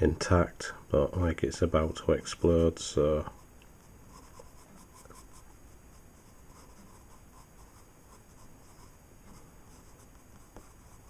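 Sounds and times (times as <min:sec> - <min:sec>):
pencil scratching on paper: 0:04.1 - 0:11.0.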